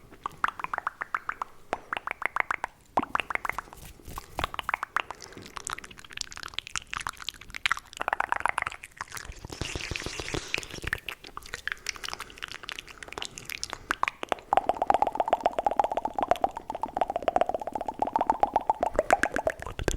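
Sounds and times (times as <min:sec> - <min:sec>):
wet mouth clicks and tongue pops: 0:00.0 - 0:19.9
mouth hissing: 0:09.0 - 0:15.4.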